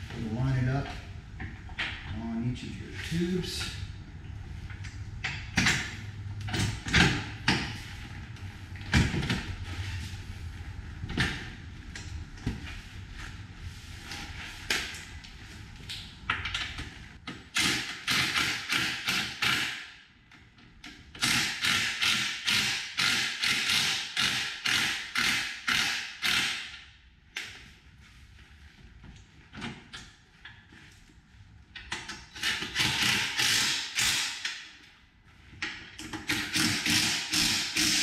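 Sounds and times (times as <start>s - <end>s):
hand ratchet clicking: 21.2s - 26.7s, 32.3s - 34.6s, 36.1s - 38.0s.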